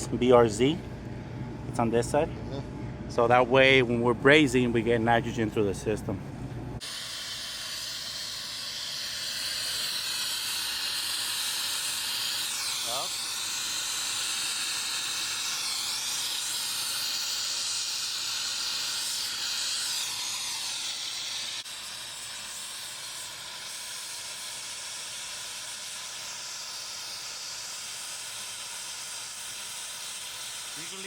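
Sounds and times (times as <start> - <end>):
gas hissing through lines: 6.8 - 31.0.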